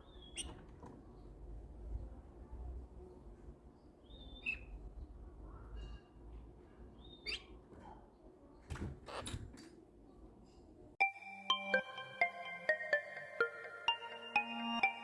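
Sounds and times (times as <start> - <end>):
parrot chirping: 0.0 - 0.6, 4.0 - 4.8, 7.0 - 7.6.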